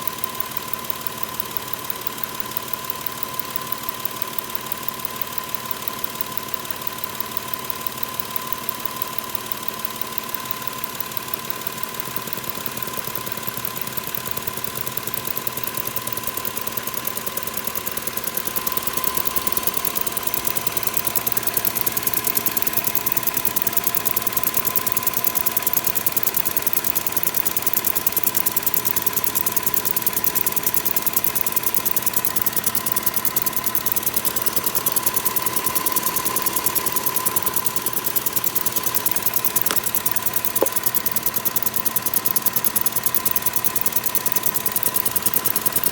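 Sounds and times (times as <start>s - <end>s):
fast even engine ticking: 0.0s - 45.9s
car engine running: 10.2s - 45.9s.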